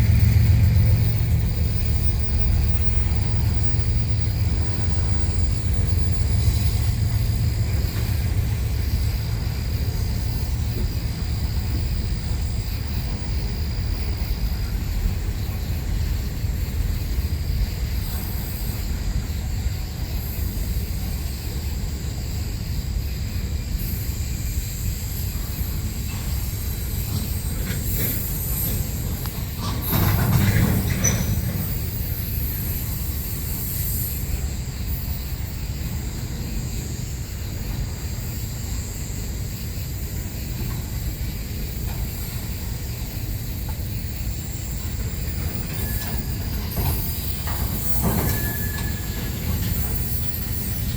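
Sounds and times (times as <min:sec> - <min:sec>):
freight train wheels rumbling: 0:00.0 - 0:50.9
high wheel squeal: 0:25.0 - 0:35.4, 0:40.1 - 0:50.9.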